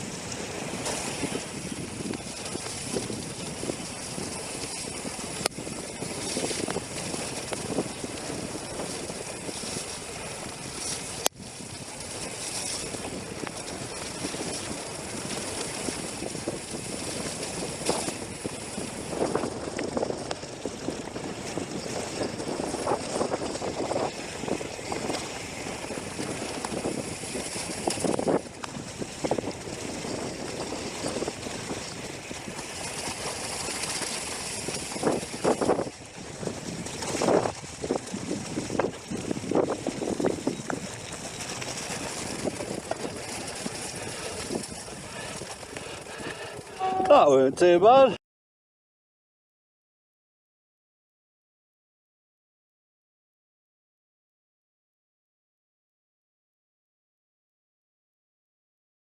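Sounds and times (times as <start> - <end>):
bike knocking and rattling: 0.0 - 47.1
wind rushing over microphone: 0.0 - 47.7
bike tyres rumbling on trail: 0.0 - 48.2.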